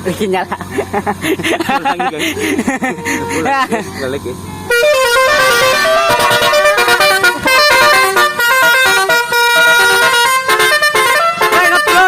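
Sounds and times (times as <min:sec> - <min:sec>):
horn playing a melody: 0:02.9 - 0:03.7, 0:04.7 - 0:12.0.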